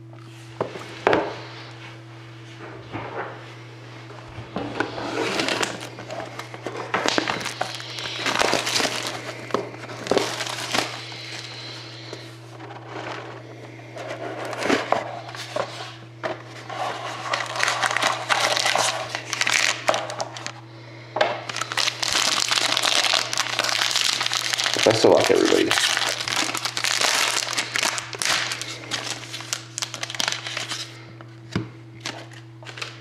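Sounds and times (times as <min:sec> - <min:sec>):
steady low hum: 0:00.0 - 0:33.0
plastic wrapping crinkling: 0:04.6 - 0:13.3, 0:14.1 - 0:20.6, 0:21.4 - 0:31.0, 0:32.0 - 0:33.0.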